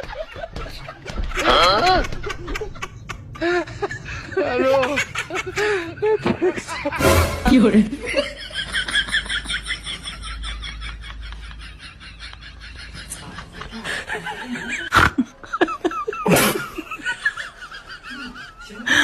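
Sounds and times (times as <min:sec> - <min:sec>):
person laughing: 0:00.2 - 0:07.1.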